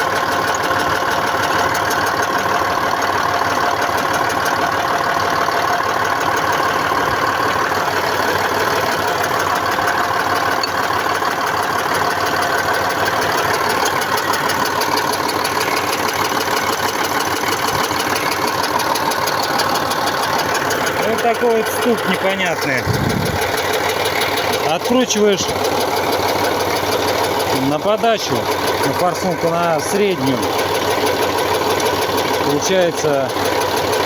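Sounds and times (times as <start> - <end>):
diesel engine with metallic knock: 0.0 - 34.0.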